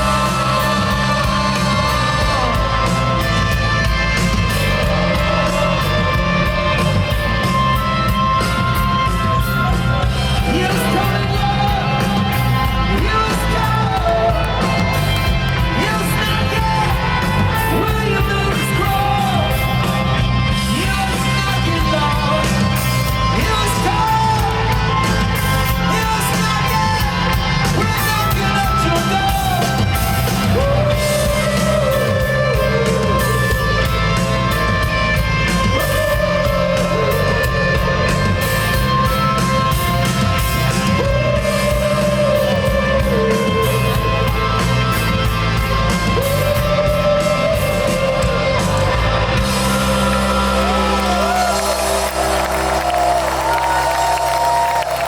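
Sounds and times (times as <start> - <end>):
person singing: 0.0 - 24.9
live rock band playing: 0.0 - 55.0.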